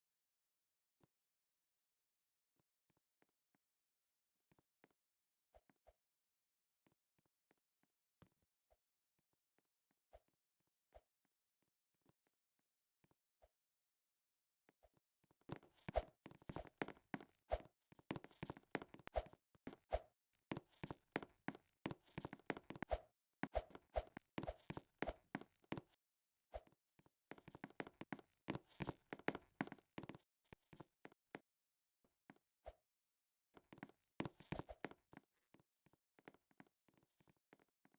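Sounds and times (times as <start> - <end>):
faint taps and knocks: 15.5 - 17.2.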